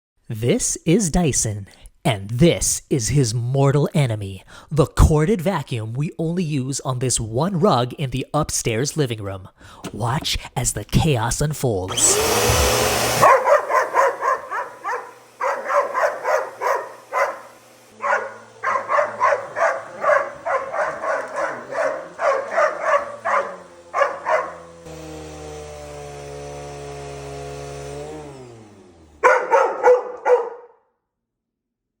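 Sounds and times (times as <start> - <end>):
vacuum cleaner motor hum: 11.9 - 30.4
dog barking: 13.2 - 24.7, 29.2 - 30.8.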